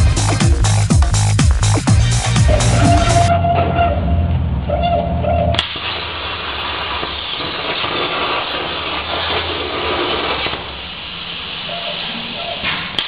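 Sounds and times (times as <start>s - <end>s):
background music: 0.0s - 3.4s
plasma torch cutting steel: 5.6s - 13.0s.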